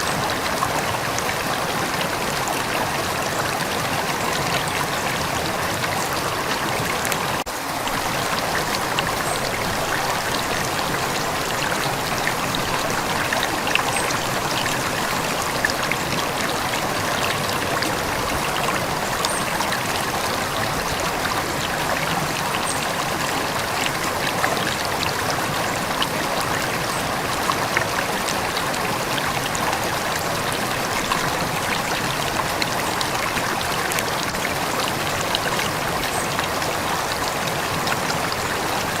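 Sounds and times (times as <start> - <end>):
river flowing: 0.0 - 39.0.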